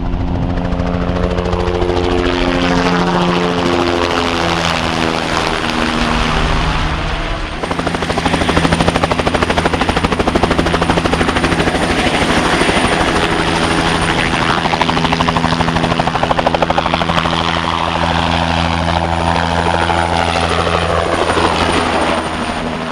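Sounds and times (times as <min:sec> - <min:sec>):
helicopter rotor beating: 0:00.0 - 0:22.9
high turbine whine: 0:00.0 - 0:22.9.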